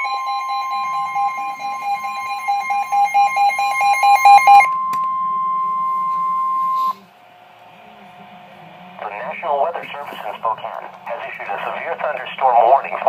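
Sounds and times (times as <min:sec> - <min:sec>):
rapidly pulsing beep: 0:00.0 - 0:07.0
steady alarm tone: 0:00.0 - 0:07.1.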